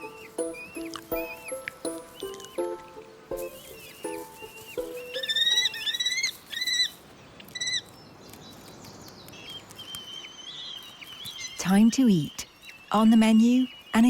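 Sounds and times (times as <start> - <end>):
kestrels calling shrilly: 0.0 - 7.0.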